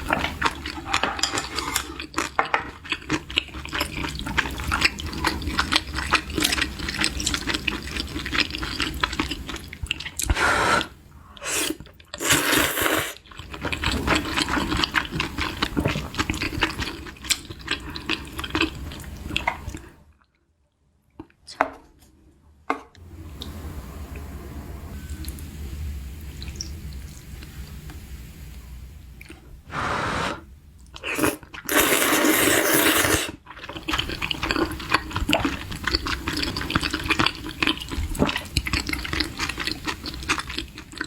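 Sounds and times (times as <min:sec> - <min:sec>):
wet chewing: 0:00.0 - 0:10.9, 0:11.6 - 0:19.8, 0:30.9 - 0:41.0
loud slurps: 0:10.2 - 0:13.2, 0:29.7 - 0:30.4, 0:31.0 - 0:33.4.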